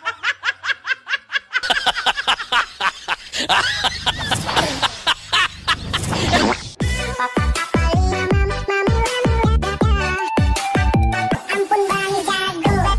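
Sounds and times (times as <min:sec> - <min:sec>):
rapid high-pitched laughter: 0:00.0 - 0:06.6.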